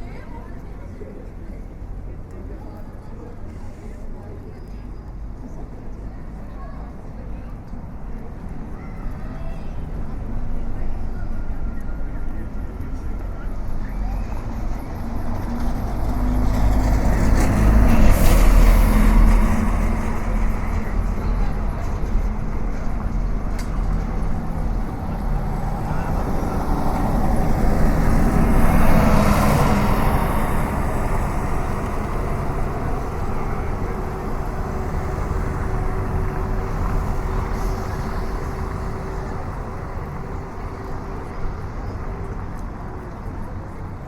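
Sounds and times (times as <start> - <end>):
rumble of road traffic: 0.0 - 44.0
steady engine-like hum: 0.0 - 44.0
vehicle passing close by: 15.0 - 42.4.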